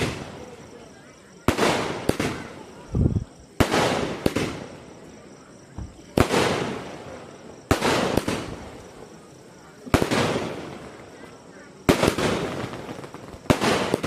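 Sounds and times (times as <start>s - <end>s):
firework bangs with hiss: 0.0s - 14.0s
dull firework thumps: 5.7s - 6.8s.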